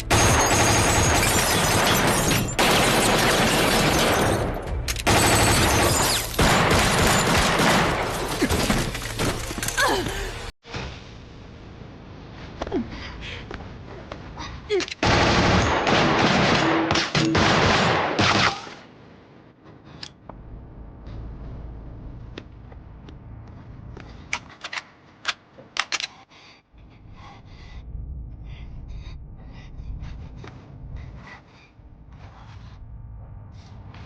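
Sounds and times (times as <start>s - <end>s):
low rumble: 20.2s - 24.3s, 26.7s - 34.0s.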